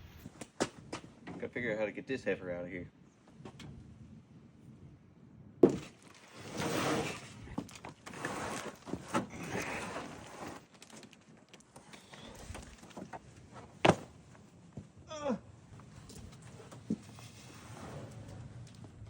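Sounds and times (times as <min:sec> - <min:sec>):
heavy box scraping in truck bed: 0:05.7 - 0:11.0, 0:16.5 - 0:18.6.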